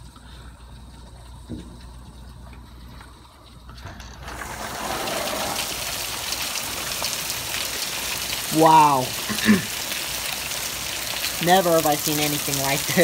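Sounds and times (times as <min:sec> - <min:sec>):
hailstones pelting ground and roof: 0:04.0 - 0:13.0.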